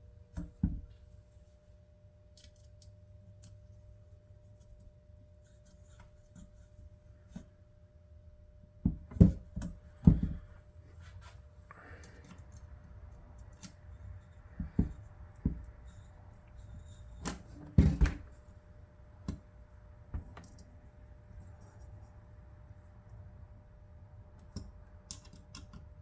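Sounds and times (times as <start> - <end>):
faint steady hum: 0.0 - 26.0
knocks and clicks of handled parts: 8.8 - 10.5, 12.0 - 15.8, 24.4 - 25.9.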